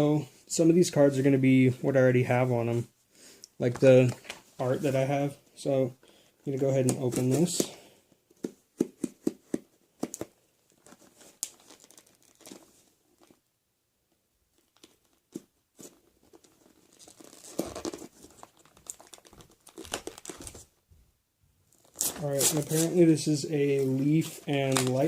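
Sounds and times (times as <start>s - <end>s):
packaging tearing and crinkling: 10.8s - 13.4s, 14.6s - 20.7s, 21.7s - 23.0s, 24.2s - 25.0s.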